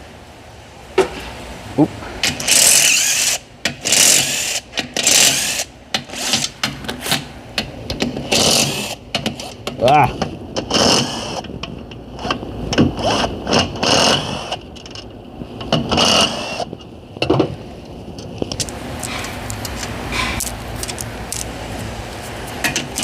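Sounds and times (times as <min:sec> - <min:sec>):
power wrench running: 0:02.2 - 0:07.2, 0:08.2 - 0:09.6, 0:15.8 - 0:16.7.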